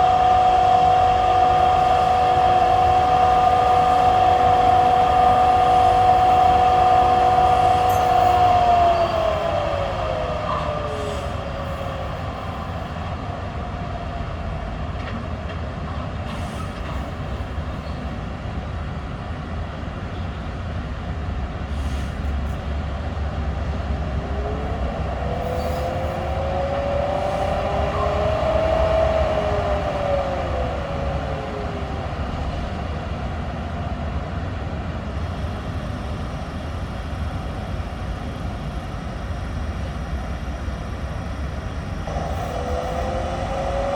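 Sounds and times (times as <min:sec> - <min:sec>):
train wheels squealing: 0:00.0 - 0:13.0, 0:16.3 - 0:18.2, 0:24.2 - 0:32.8
freight train rumbling: 0:00.0 - 0:43.9.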